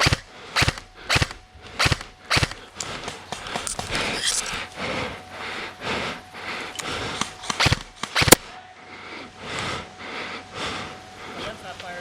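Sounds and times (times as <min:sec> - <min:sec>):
airsoft gun shots: 0:00.0 - 0:03.9, 0:07.1 - 0:08.5.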